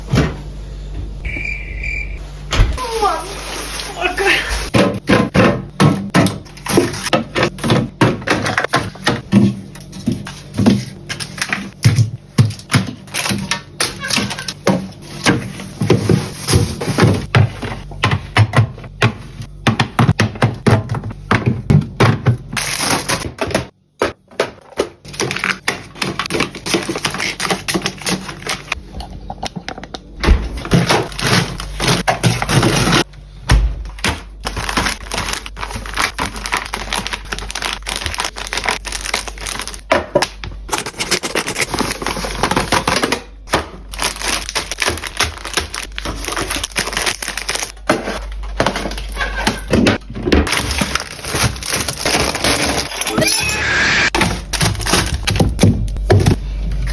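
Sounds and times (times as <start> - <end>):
plastic wrappers crinkling: 8.5 - 11.9, 22.6 - 23.2, 24.6 - 28.8, 30.6 - 33.1, 33.8 - 53.1, 54.1 - 56.9.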